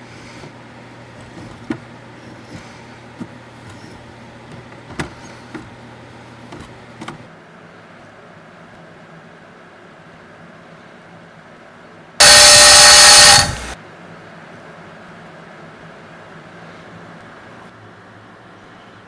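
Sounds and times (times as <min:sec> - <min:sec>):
steady low hum: 0:12.2 - 0:13.8.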